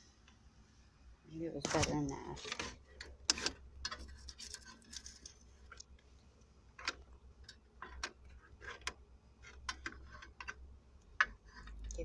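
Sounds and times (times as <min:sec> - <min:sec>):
low steady hum: 0:00.0 - 0:12.0
hands handling a wire clicking: 0:06.8 - 0:12.0.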